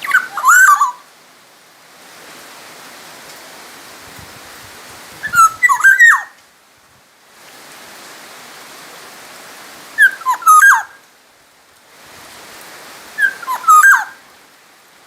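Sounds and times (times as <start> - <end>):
steady hiss: 0.0 - 10.1
bird singing fluty whistles: 5.2 - 6.3, 13.2 - 14.2.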